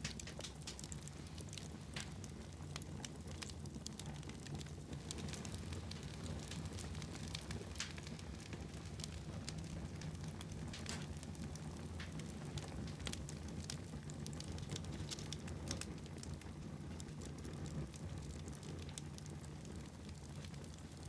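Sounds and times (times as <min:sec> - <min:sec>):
fire popping and crackling: 0:00.0 - 0:21.0
low rumble of flames: 0:00.0 - 0:21.0.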